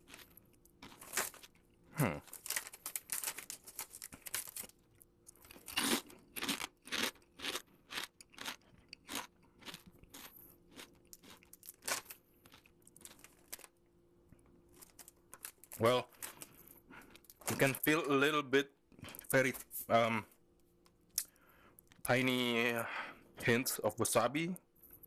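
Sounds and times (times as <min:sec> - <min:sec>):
person chewing potato chips: 0:00.0 - 0:13.8, 0:14.4 - 0:17.4.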